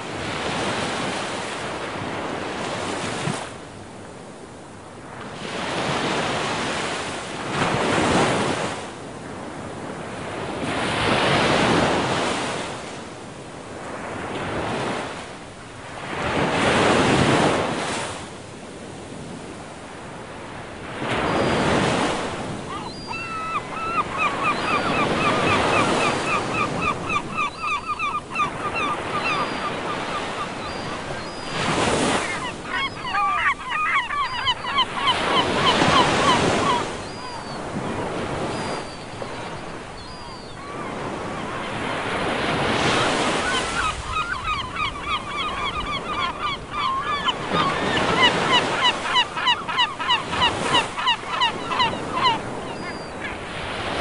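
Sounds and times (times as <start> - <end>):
ocean waves breaking: 0.0 - 54.0
gulls calling: 21.1 - 54.0.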